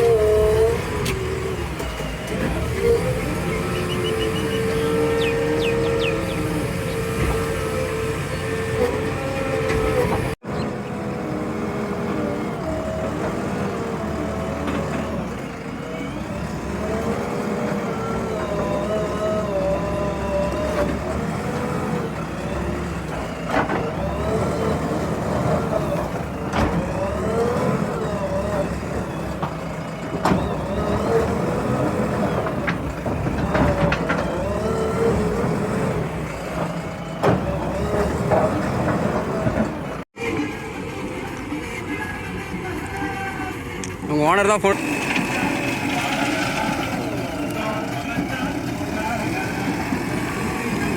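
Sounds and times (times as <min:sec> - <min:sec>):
diesel engine revving: 0:00.0 - 0:50.9.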